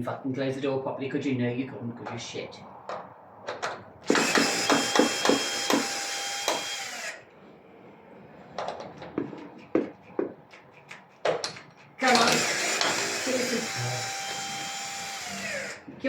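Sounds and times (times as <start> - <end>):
cordless drill running: 4.1 - 7.3, 12.0 - 16.0.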